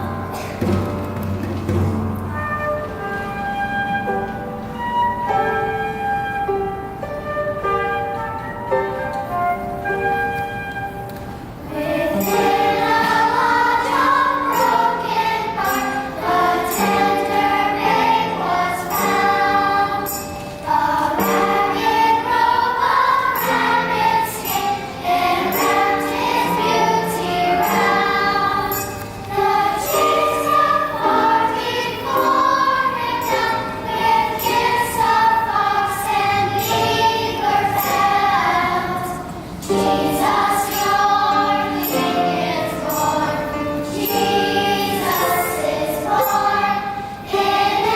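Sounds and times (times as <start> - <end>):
instrumental accompaniment: 0.0 - 47.9
high percussion strokes: 10.3 - 47.9
choir singing: 11.6 - 47.9.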